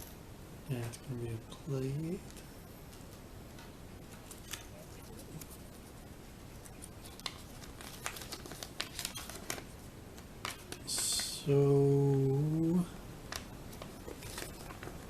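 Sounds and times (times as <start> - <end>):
wrapper crinkling: 6.6 - 9.8.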